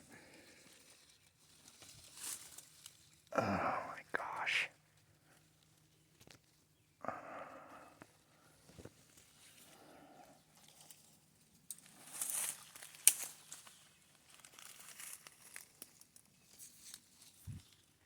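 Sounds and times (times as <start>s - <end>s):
dry leaves rustling and crackling: 0.0s - 4.4s, 9.0s - 18.0s
twig snapping: 10.6s - 17.0s.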